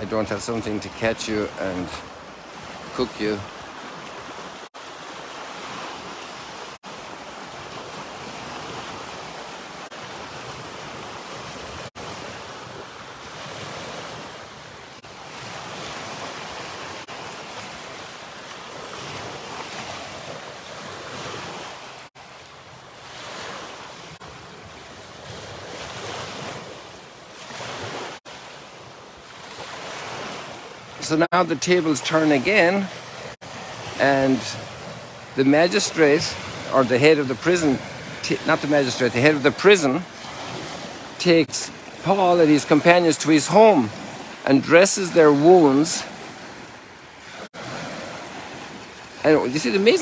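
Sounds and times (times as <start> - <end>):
waves washing onto shore: 0.0 - 50.0
wind buffeting microphone: 23.3 - 28.1.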